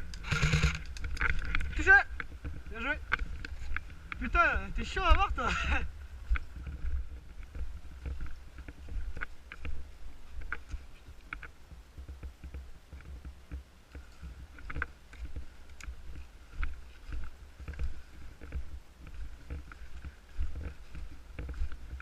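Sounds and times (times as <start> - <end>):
rumbling of camera handling: 0.0 - 4.2.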